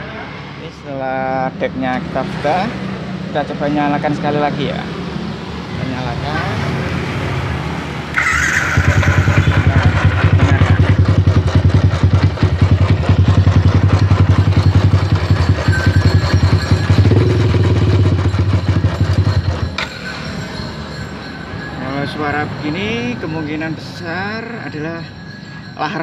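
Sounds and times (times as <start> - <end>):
raspy rubbing engine noise: 8.1 - 12.7, 13.3 - 26.0
motorcycle engine starting: 8.1 - 26.0.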